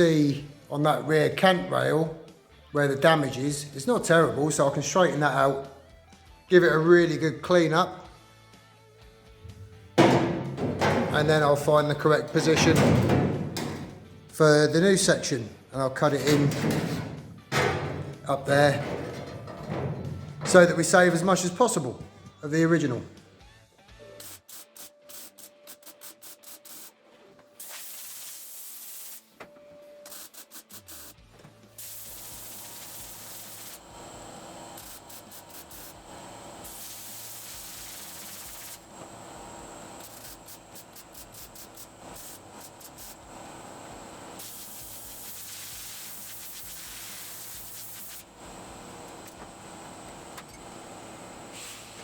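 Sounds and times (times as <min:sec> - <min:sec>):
abrasive power tool on sheet metal: 0:09.5 - 0:21.8, 0:31.8 - 0:52.0.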